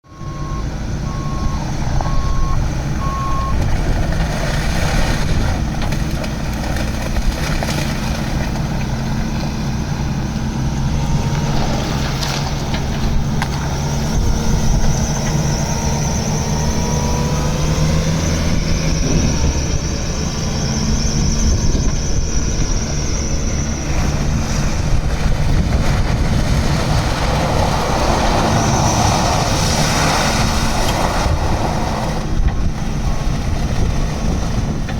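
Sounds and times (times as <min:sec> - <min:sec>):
diesel engine running: 0:00.0 - 0:34.9
back-up alarm beeping: 0:00.1 - 0:03.6.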